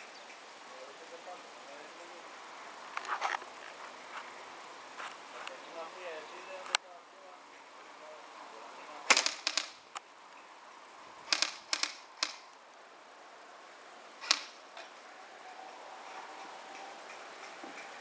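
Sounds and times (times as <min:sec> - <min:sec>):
airsoft guns firing: 0:09.0 - 0:10.0, 0:11.2 - 0:12.6, 0:14.2 - 0:14.7.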